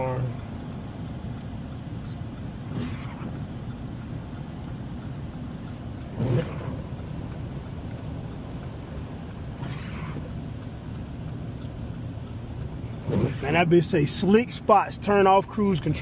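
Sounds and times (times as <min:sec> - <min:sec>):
vehicle engine and tyres rumbling: 0:00.0 - 0:16.0.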